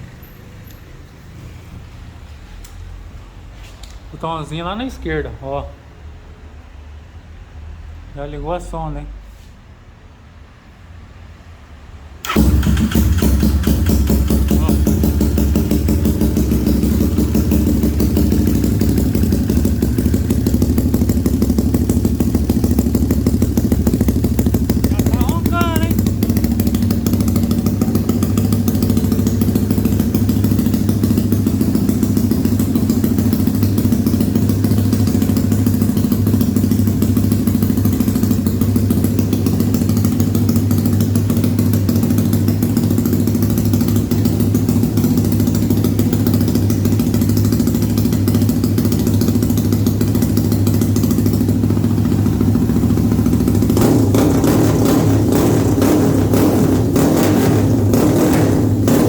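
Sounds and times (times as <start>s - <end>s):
single-cylinder engine idling: 12.2s - 59.0s.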